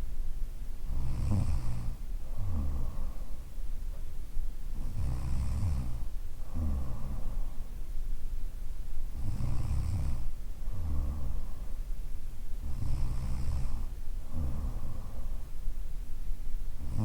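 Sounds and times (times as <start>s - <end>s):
woman snoring: 0.9s - 3.2s, 4.8s - 7.3s, 9.2s - 11.6s, 12.6s - 15.1s, 16.8s - 17.0s.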